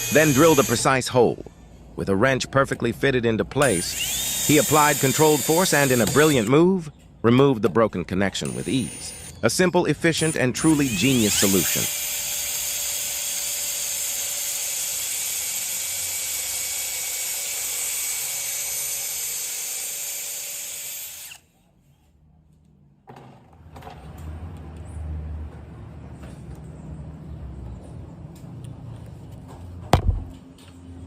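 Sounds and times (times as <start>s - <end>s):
power drill running: 0.0s - 0.9s, 3.6s - 6.5s, 8.5s - 9.3s, 10.2s - 21.5s.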